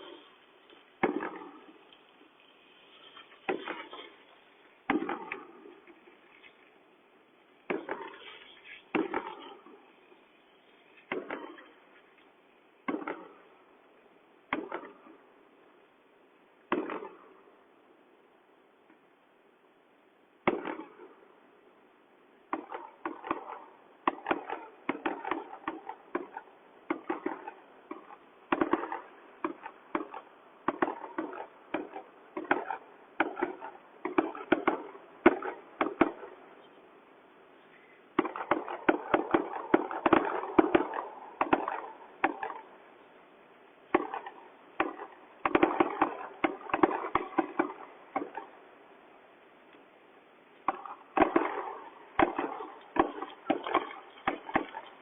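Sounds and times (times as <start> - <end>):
firework bangs: 0.0 - 6.6, 7.6 - 12.1, 12.8 - 13.6, 14.5 - 15.2, 16.6 - 17.4, 20.4 - 21.2, 22.5 - 36.7, 38.1 - 42.8, 43.8 - 48.6, 50.6 - 55.0
firecrackers crackling rapidly: 0.0 - 6.9, 7.5 - 12.2, 22.6 - 36.6, 37.6 - 42.7, 43.9 - 48.6, 50.6 - 55.0.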